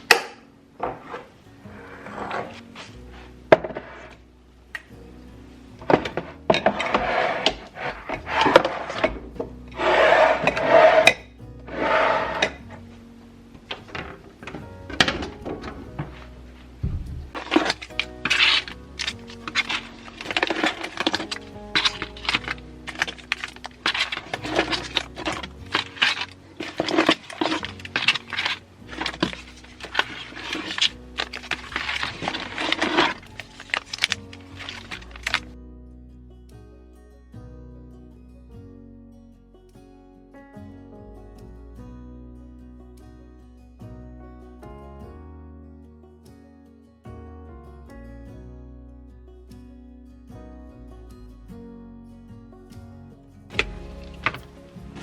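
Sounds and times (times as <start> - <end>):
soft background music: 0.0 - 55.0
objects scraping hard surfaces: 0.8 - 4.2, 5.8 - 12.8, 13.7 - 35.6, 53.5 - 55.0
packaging rustling: 17.3 - 35.6.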